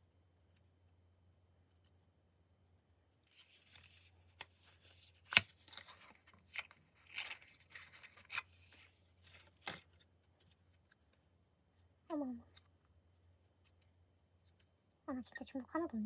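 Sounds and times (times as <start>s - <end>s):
faint steady hum: 0.0s - 16.0s
packaging rustling and crinkling: 3.3s - 10.8s.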